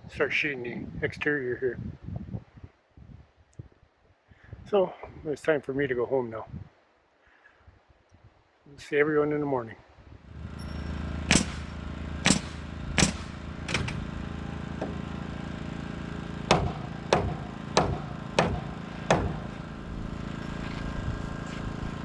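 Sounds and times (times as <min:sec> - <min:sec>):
engine hum: 0:10.2 - 0:22.0
hammer blows: 0:10.3 - 0:22.0.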